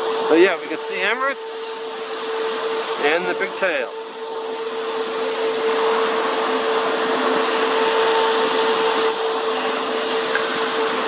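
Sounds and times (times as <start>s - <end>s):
machine whine: 0.0s - 11.0s.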